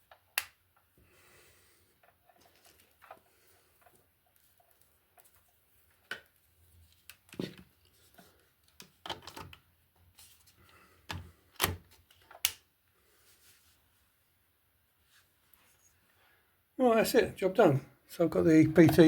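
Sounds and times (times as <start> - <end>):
clicks and knocks of handling: 6.0 - 9.7.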